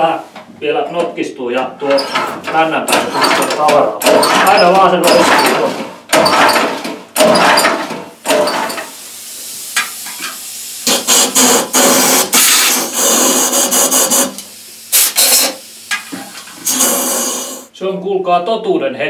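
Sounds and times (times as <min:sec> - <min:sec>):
engine pull cord rasping: 0:01.8 - 0:08.9.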